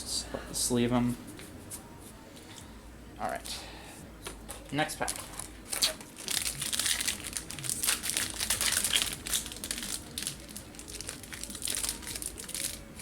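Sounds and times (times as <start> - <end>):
foil wrapper crinkling: 5.0 - 13.0.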